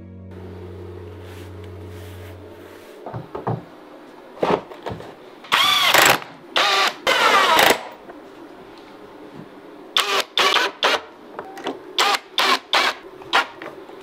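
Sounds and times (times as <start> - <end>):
background music: 0.0 - 1.3
knocks: 3.1 - 3.7
cordless drill running: 5.5 - 7.9, 10.0 - 11.0, 12.0 - 13.5.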